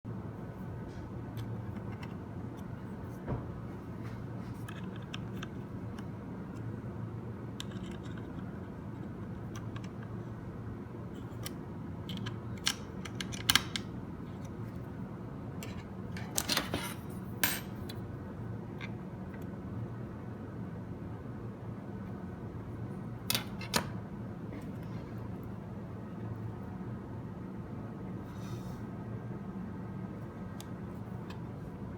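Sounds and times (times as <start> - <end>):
steady low hum: 0.1 - 31.9.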